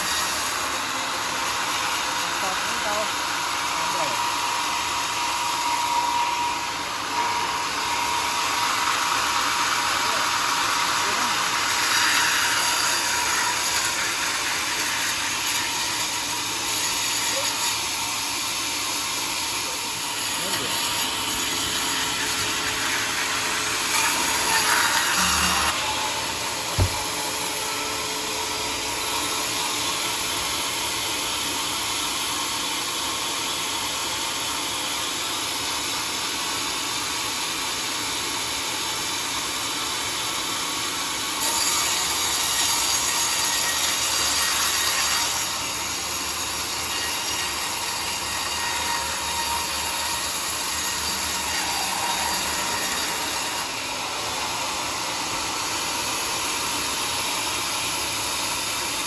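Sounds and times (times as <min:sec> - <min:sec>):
saw cutting through log: 0:00.0 - 0:59.0
sharp knock: 0:26.7 - 0:27.2.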